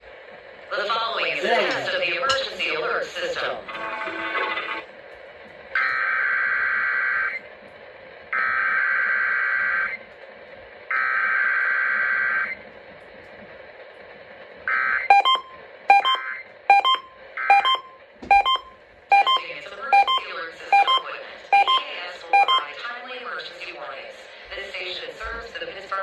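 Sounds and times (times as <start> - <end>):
short beeps: 15.1 - 22.7.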